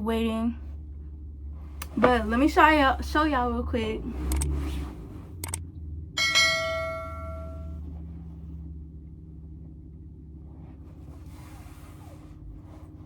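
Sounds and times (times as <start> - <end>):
low steady hum: 0.0 - 13.0
short clicks: 4.3 - 4.5, 5.4 - 5.6
bell-like chime: 6.2 - 7.7.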